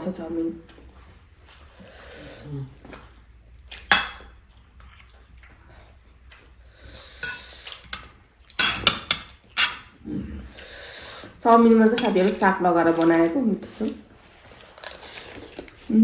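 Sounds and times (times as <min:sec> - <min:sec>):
cutlery clinking against dish: 0:03.9 - 0:04.3, 0:07.2 - 0:09.9, 0:12.0 - 0:12.4.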